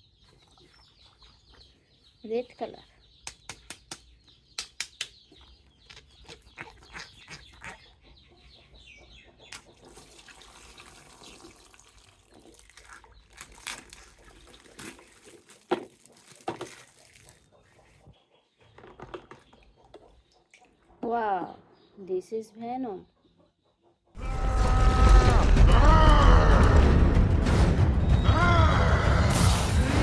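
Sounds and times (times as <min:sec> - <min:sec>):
water splashing and running: 0:09.8 - 0:17.4.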